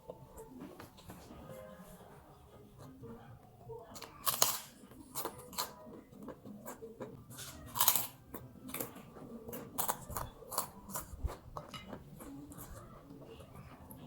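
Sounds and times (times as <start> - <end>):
person chewing crunchy food: 3.9 - 14.0.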